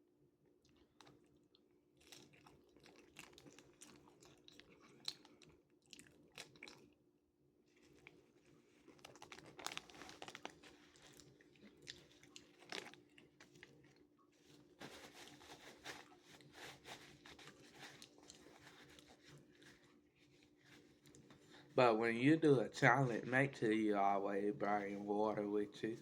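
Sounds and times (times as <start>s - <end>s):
person chewing crunchy food: 0.6s - 7.1s, 7.7s - 21.7s
faint steady hum: 2.5s - 26.0s.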